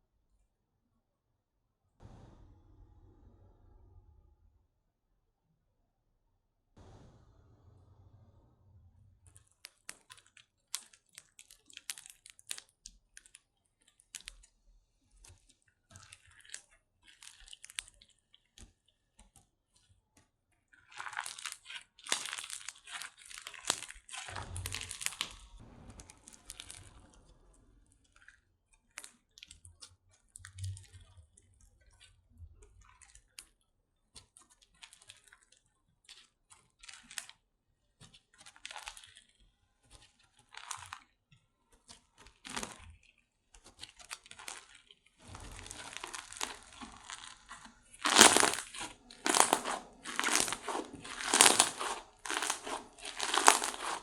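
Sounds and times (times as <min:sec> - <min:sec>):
slime squished by hand: 0:20.7 - 0:27.2, 0:41.9 - 0:54.0.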